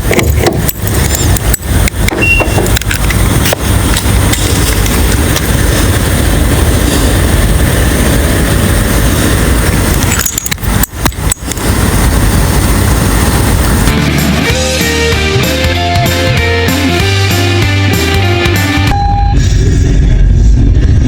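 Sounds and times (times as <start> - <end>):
car road rumble: 0.0 - 14.7.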